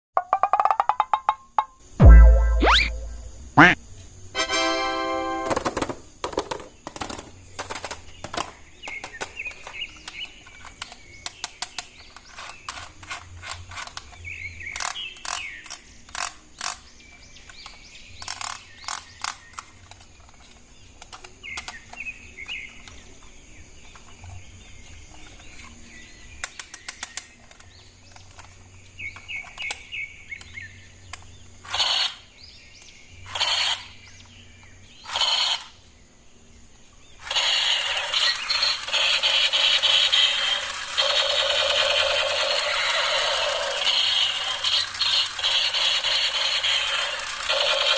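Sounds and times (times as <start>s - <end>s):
short musical tone: 2.0s - 3.8s.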